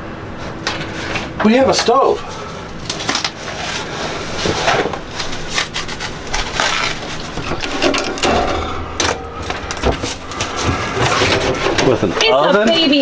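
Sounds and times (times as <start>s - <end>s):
stove knocks clicks and scrapes: 7.4s - 12.3s.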